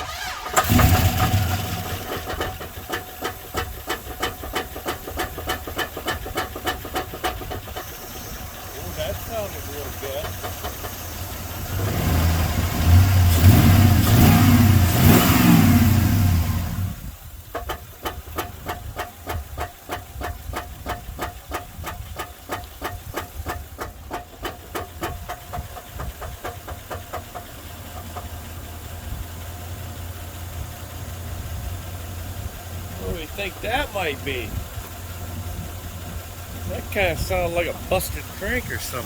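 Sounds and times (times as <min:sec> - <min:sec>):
car engine revving: 0:00.0 - 0:02.6, 0:08.2 - 0:17.0
heavy engine knocking: 0:00.1 - 0:12.5, 0:17.2 - 0:39.0.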